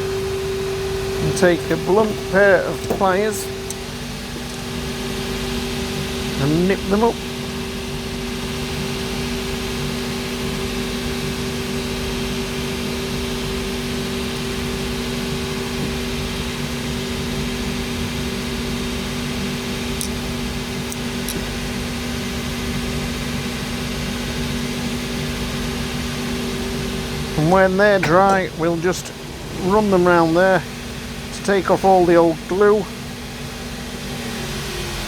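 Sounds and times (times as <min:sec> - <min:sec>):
motor hum with held tones: 0:00.0 - 0:35.0
fan-like rush: 0:27.4 - 0:33.1.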